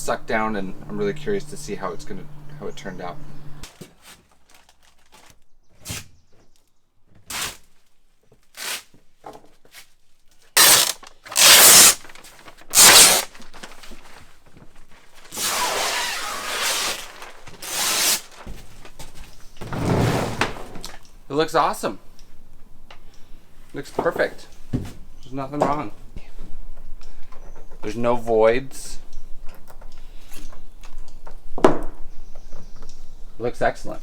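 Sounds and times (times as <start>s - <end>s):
plastic crinkling: 3.7s - 5.5s, 10.6s - 19.4s
vacuum bag ripping: 10.6s - 13.9s, 15.2s - 18.5s.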